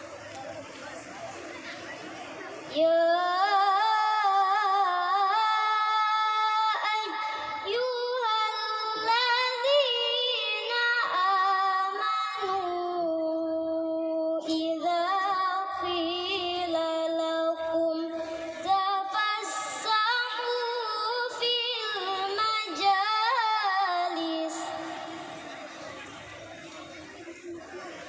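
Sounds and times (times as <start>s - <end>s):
girl reciting melodically: 2.6s - 25.6s.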